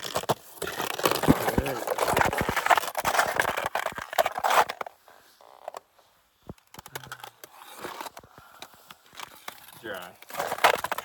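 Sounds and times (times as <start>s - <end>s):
footsteps crunching on ice and snow: 0.0s - 4.9s.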